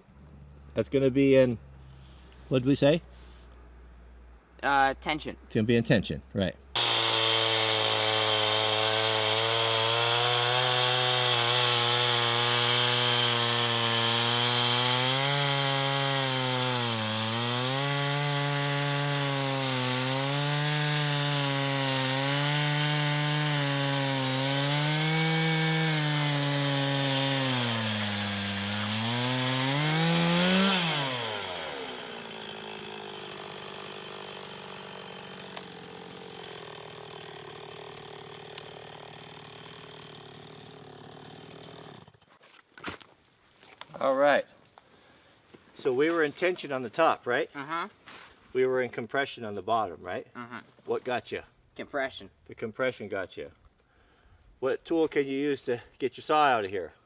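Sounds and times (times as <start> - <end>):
chainsaw cutting a log: 6.8 - 42.3.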